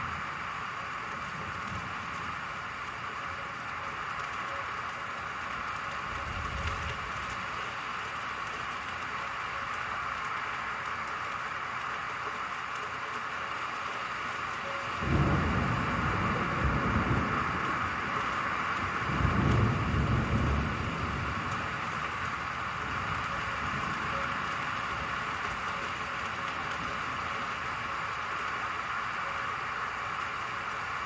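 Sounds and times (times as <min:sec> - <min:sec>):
steady rain hiss: 0:00.0 - 0:31.0
low rumble of thunder: 0:00.1 - 0:04.5, 0:05.3 - 0:07.7, 0:14.8 - 0:28.4.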